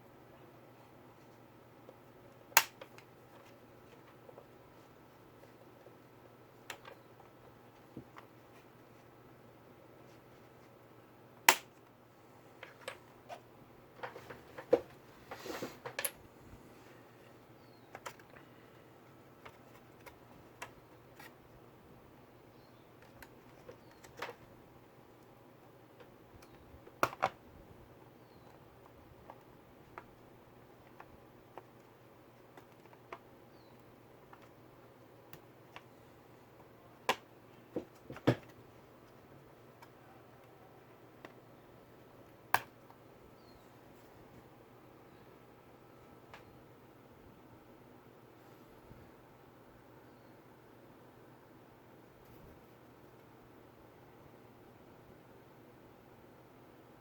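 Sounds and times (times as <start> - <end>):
laptop parts clicking and tapping: 6.6 - 7.4, 17.9 - 18.4, 26.0 - 27.4, 30.8 - 34.6, 42.5 - 43.0.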